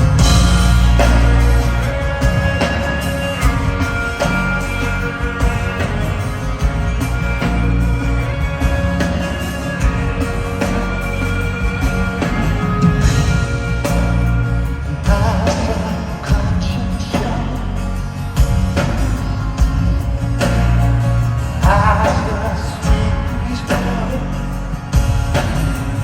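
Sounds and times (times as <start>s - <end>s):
live rock band: 0.0s - 26.0s
man singing: 14.9s - 18.0s, 21.6s - 24.6s.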